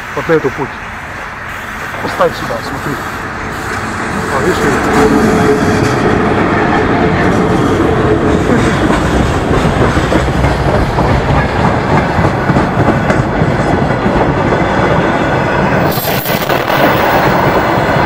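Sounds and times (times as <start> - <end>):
freight train wheels clattering: 1.5 - 18.0.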